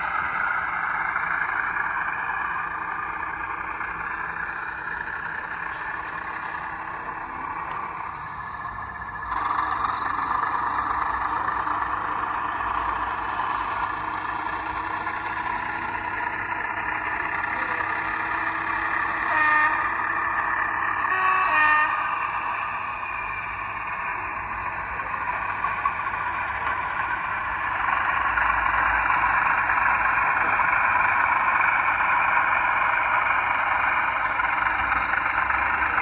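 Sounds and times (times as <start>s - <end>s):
model locomotive diesel engine running: 0.0s - 36.0s
short locomotive horn note: 19.2s - 20.1s, 21.0s - 22.2s.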